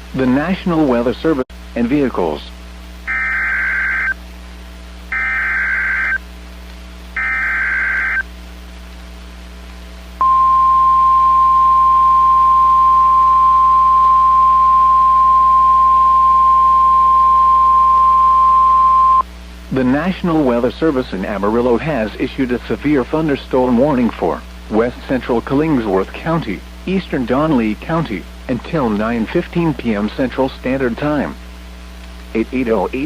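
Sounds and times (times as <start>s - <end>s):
data tone bursts: 3.1s - 4.2s, 5.1s - 6.2s, 7.2s - 8.3s, 10.2s - 19.3s
steady alarm tone: 3.1s - 4.2s, 5.1s - 6.2s, 7.2s - 8.2s, 10.2s - 19.2s.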